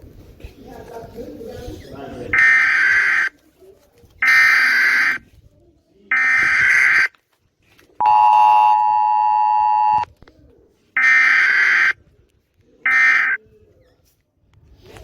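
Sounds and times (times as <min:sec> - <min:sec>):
two-tone attention signal: 0:08.0 - 0:10.1.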